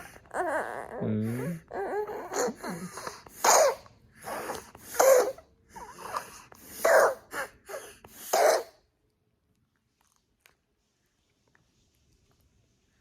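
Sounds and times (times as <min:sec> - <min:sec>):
baby hoarse breathy crying: 0:00.0 - 0:08.8.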